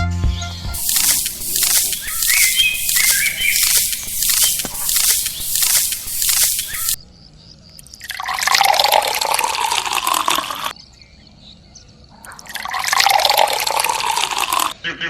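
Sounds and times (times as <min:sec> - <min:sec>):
water pouring: 0:00.7 - 0:07.0, 0:08.0 - 0:10.7, 0:12.4 - 0:14.8.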